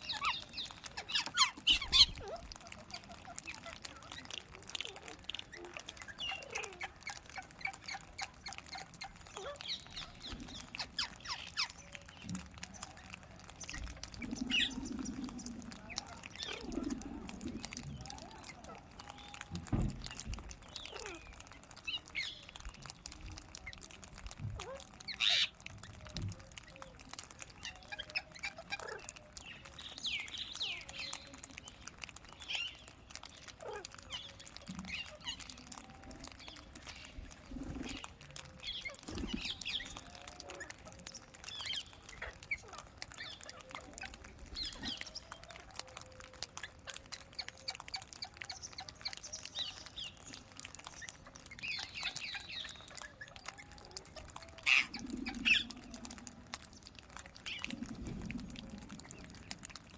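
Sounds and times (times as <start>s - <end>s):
parrots chirping: 0.0s - 2.7s, 6.0s - 19.4s, 41.5s - 58.0s.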